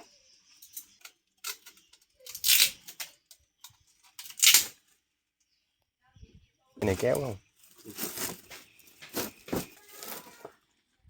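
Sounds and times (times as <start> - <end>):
rasping rustles: 7.0 - 10.5.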